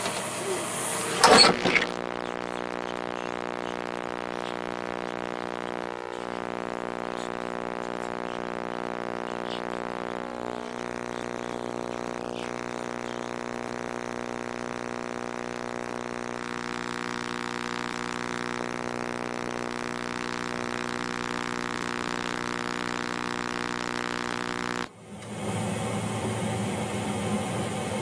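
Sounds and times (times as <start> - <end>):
microwave oven humming: 0.0 - 28.0.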